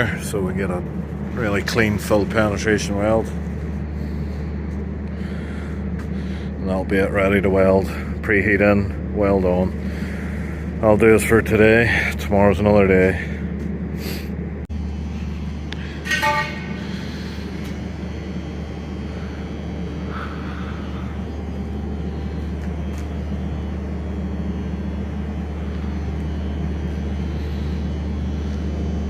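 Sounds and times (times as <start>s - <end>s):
low machine hum: 0.0s - 29.0s
short pitched tone: 15.8s - 17.5s.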